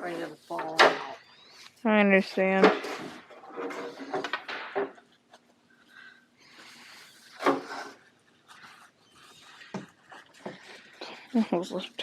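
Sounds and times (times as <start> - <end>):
rustling: 2.9 - 12.0.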